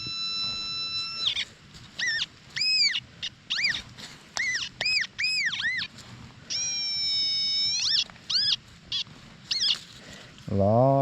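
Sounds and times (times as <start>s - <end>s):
metal detector beeps: 0.0s - 5.9s, 6.5s - 9.8s
metal detector long steady tone: 0.0s - 10.0s.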